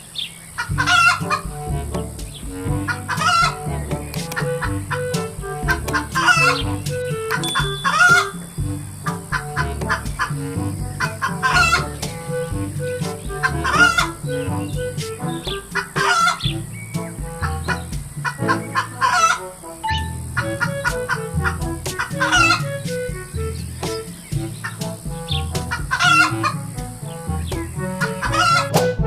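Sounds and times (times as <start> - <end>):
chicken squawks: 0.7 - 1.4, 2.9 - 3.6, 4.4 - 8.5, 11.0 - 16.5, 17.1 - 19.4, 20.4 - 23.2, 23.8 - 27.2, 27.8 - 28.9
cheerful background music: 0.7 - 29.0.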